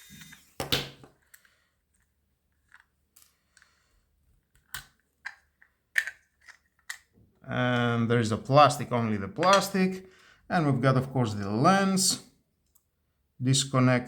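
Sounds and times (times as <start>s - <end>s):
screwdriver and plastic clicks: 4.5s - 7.1s.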